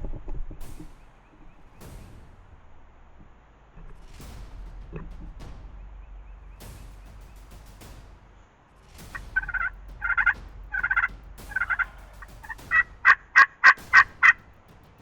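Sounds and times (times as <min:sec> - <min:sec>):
wild turkey yelps: 0:09.1 - 0:14.4.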